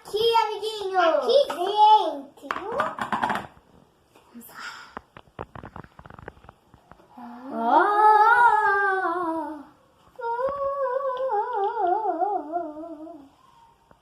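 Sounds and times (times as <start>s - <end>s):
child humming: 7.2s - 13.3s.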